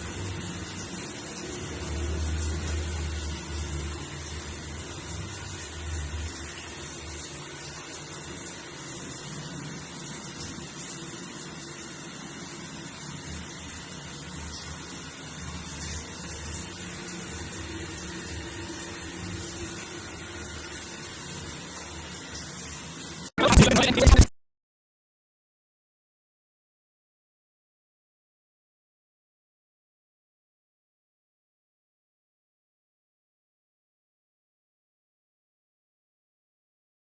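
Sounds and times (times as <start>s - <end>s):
shower water running: 0.0s - 24.0s.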